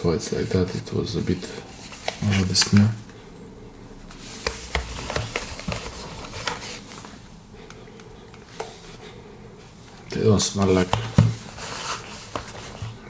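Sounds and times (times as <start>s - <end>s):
cardboard boxes tapping and rustling: 4.4s - 6.7s, 10.6s - 13.0s.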